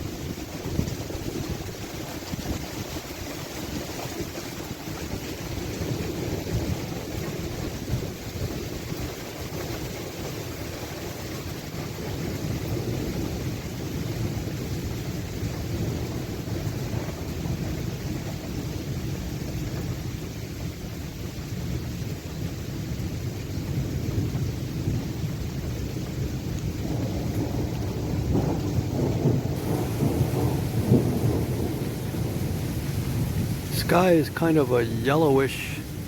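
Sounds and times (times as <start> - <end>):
light rain hiss: 0.0 - 36.0
thunder roar and rumble: 23.8 - 33.9.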